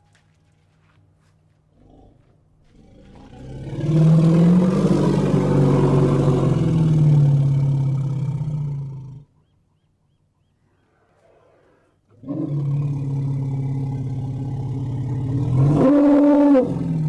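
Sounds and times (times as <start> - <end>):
elephant bellowing: 3.1 - 9.0, 10.8 - 17.0.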